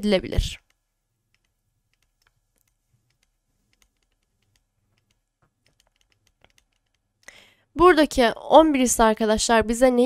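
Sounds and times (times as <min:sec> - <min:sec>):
faint irregular clicks: 0:00.6 - 0:07.4.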